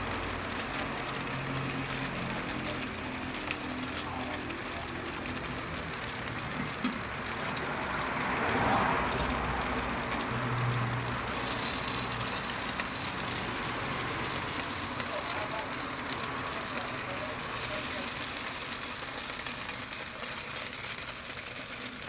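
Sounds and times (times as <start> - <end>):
dumplings sizzling in oil: 0.0 - 22.0.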